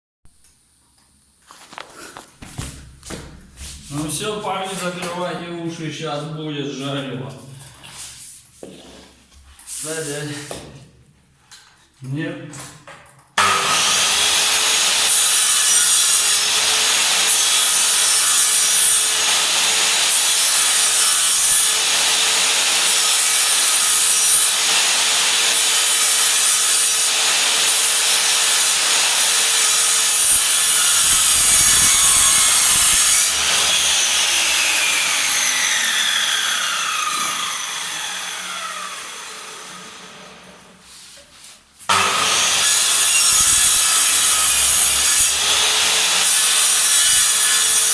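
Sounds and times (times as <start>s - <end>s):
miter saw cutting wood: 13.4s - 40.5s, 41.9s - 47.9s.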